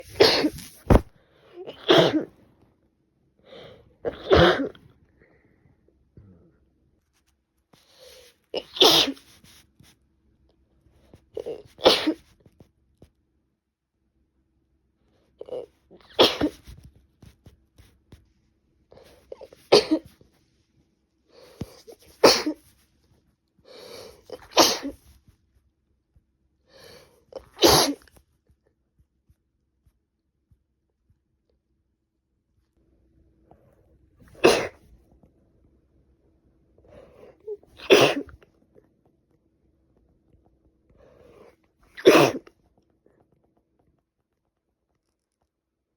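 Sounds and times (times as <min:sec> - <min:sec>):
woman sneezing: 0:00.0 - 0:01.0, 0:01.6 - 0:02.3, 0:04.0 - 0:04.8, 0:08.6 - 0:09.3, 0:11.4 - 0:12.2, 0:16.0 - 0:16.7, 0:19.4 - 0:20.1, 0:21.8 - 0:22.7, 0:23.8 - 0:25.0, 0:27.4 - 0:28.1, 0:34.3 - 0:34.8, 0:37.5 - 0:38.4, 0:41.9 - 0:42.5
catches of breath: 0:23.6 - 0:25.0.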